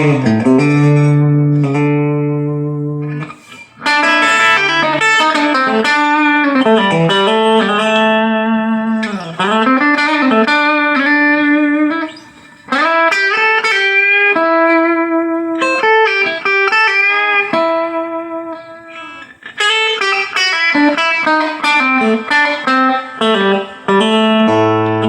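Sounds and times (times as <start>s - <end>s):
electric guitar single-note phrases: 0.0s - 25.0s.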